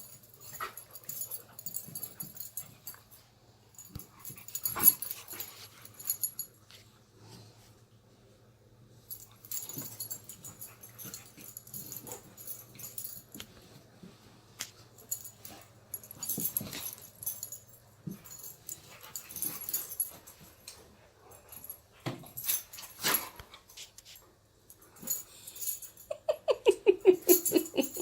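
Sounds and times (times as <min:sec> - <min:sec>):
dogs scuffling and huffing: 0:03.8 - 0:06.8, 0:09.1 - 0:24.2.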